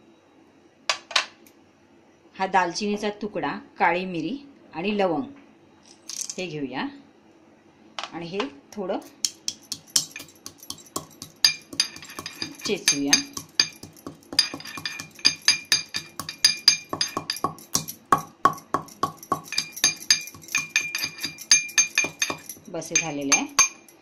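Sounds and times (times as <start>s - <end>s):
pestle striking with metallic clink: 9.1s - 24.0s.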